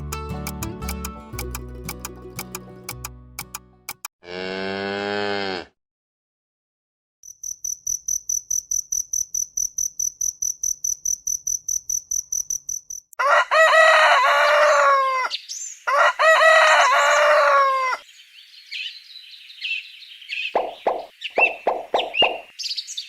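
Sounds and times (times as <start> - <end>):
cricket chirping: 7.2 - 13.2
rooster crowing: 13.2 - 18.0.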